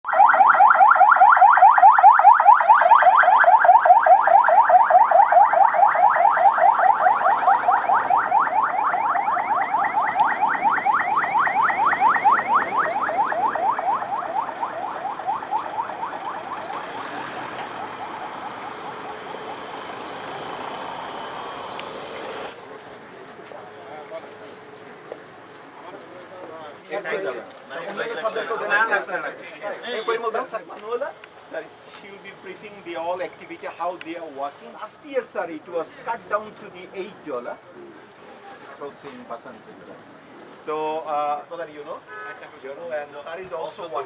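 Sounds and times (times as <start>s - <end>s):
electronic siren yelping: 0.0s - 22.5s.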